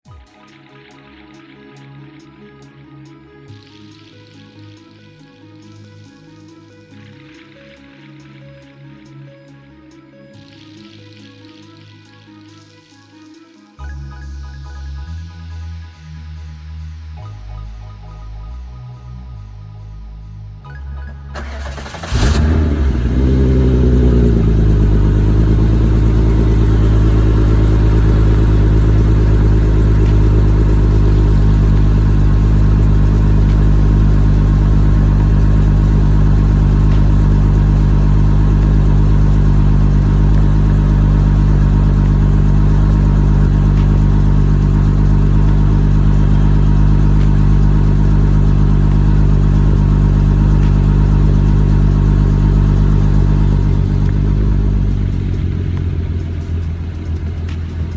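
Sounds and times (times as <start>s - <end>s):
car engine revving and idling: 20.6s - 57.9s.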